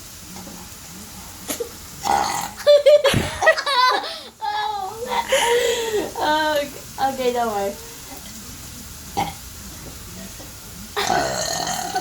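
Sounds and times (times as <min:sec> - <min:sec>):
person belching loudly: 0:02.0 - 0:02.7, 0:09.2 - 0:09.4, 0:11.0 - 0:12.0.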